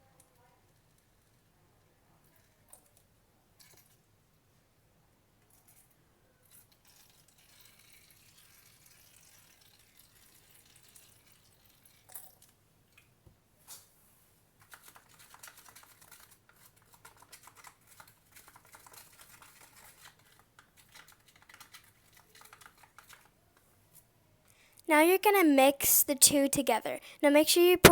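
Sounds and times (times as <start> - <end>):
light ticks and scrapes of stirring: 5.4 - 13.1, 14.6 - 23.8.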